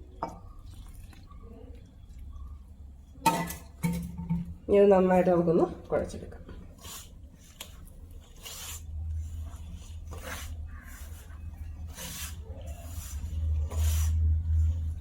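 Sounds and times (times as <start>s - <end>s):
hands kneading dough: 4.8s - 15.0s.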